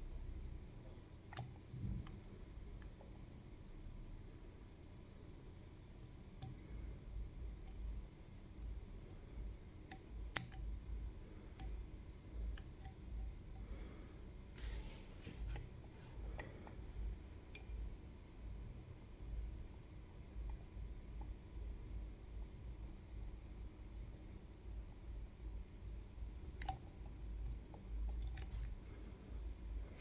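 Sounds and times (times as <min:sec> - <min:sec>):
lock pick clicks and ticks: 0:09.9 - 0:10.8.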